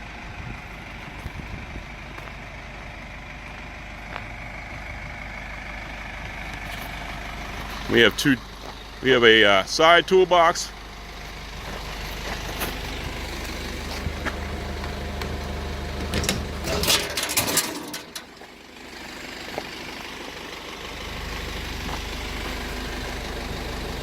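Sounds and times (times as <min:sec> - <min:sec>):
truck engine idling: 0:00.0 - 0:24.0
clattering and knocking: 0:16.0 - 0:18.4.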